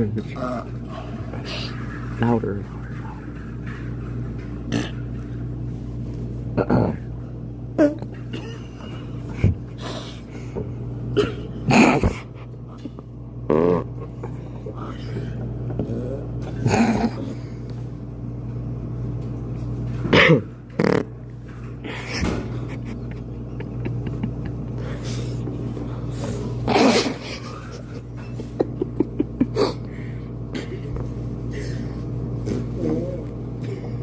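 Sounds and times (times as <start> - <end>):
low hum of laundromat machines: 0.0 - 34.0
imitated fart noises: 4.6 - 5.1, 13.4 - 14.0, 20.0 - 21.3, 26.6 - 27.2.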